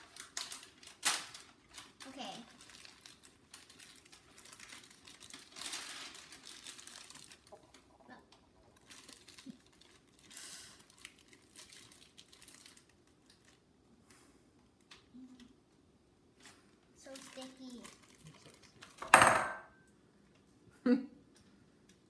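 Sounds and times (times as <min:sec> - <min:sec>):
plastic bag crinkling: 0:00.0 - 0:08.0, 0:08.6 - 0:13.7, 0:17.0 - 0:19.0.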